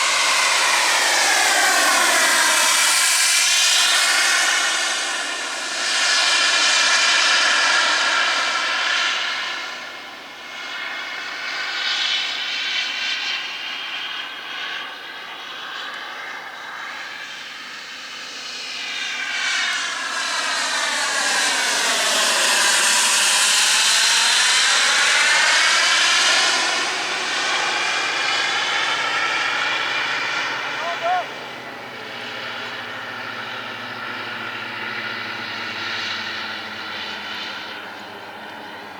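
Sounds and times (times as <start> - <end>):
model jet turbine hiss: 0.0 - 12.7.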